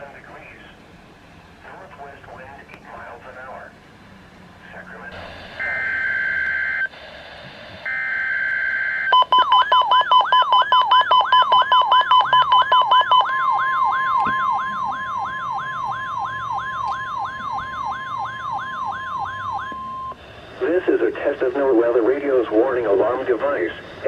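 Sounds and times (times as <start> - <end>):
warbling warning alarm tone: 5.1 - 7.0, 7.9 - 24.0.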